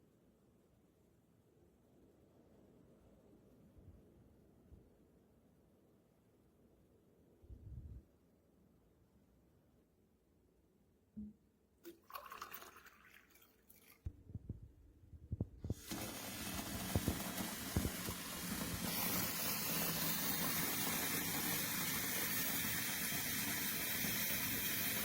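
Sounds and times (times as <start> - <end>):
tap water running into plastic jug: 11.8 - 14.1, 15.6 - 25.0.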